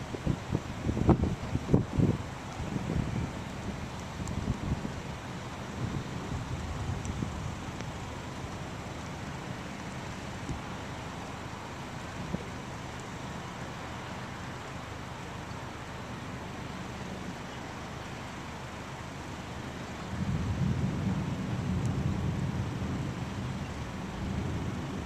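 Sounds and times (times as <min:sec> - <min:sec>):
storm wind rushing: 0:00.0 - 0:05.0, 0:20.1 - 0:25.0.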